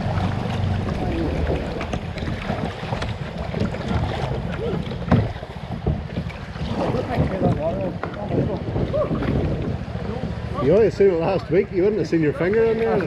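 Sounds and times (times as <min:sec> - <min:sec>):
kayak paddling in water: 0:00.0 - 0:13.0
wind buffeting microphone: 0:00.0 - 0:13.0
knock or splash: 0:00.5 - 0:08.2.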